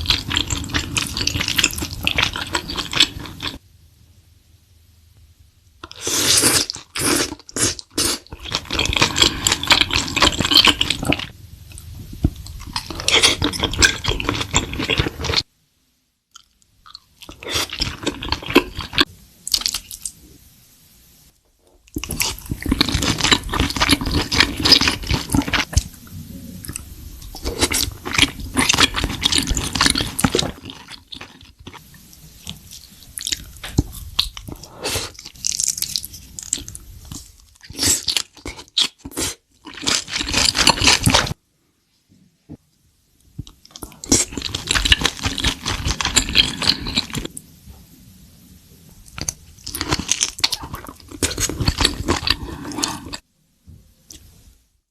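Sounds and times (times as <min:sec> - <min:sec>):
wet crunchy mouth sounds: 0:00.0 - 0:03.6, 0:05.8 - 0:15.5, 0:16.3 - 0:20.2, 0:21.8 - 0:41.4, 0:43.4 - 0:47.4, 0:49.0 - 0:53.2
chewing and biting food: 0:06.3 - 0:11.3, 0:12.2 - 0:15.4, 0:21.9 - 0:25.9, 0:26.6 - 0:31.8, 0:32.4 - 0:41.4, 0:43.4 - 0:47.3, 0:49.1 - 0:53.2.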